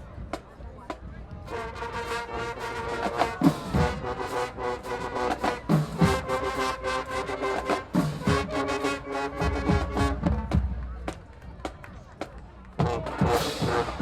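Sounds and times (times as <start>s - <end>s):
brass chords: 1.4s - 10.8s, 12.8s - 14.0s
drum strokes: 3.0s - 11.2s.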